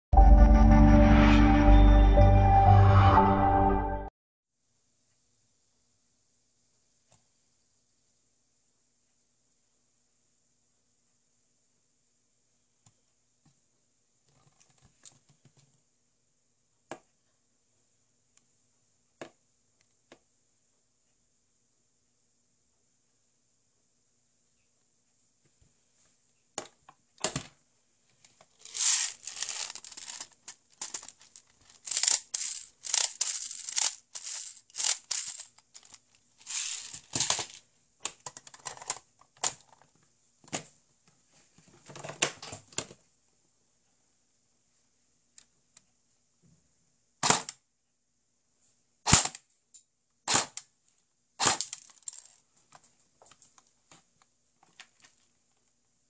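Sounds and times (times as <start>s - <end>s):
airsoft gun mechanical clatter: 28.6s - 37.6s.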